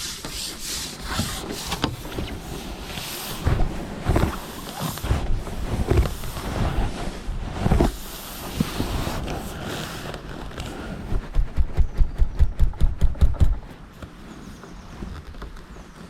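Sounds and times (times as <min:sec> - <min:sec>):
knocks and rubbing: 0:00.0 - 0:07.0, 0:11.0 - 0:14.2.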